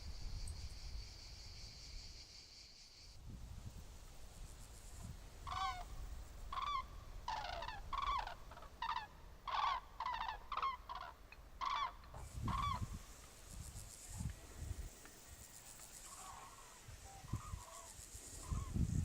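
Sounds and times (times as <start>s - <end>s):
large birds honking: 6.5s - 12.8s.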